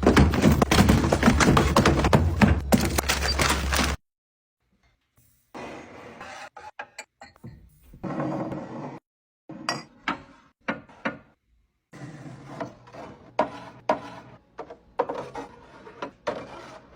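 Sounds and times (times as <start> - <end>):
containers knocking and clattering: 0.0 - 4.0.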